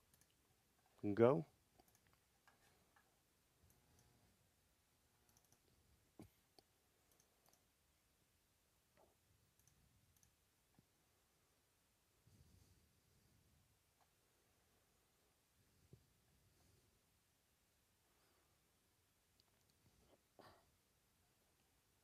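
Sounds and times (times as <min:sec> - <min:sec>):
faint clicks: 0:00.0 - 0:00.4, 0:01.7 - 0:03.1, 0:05.2 - 0:07.7, 0:09.0 - 0:10.9.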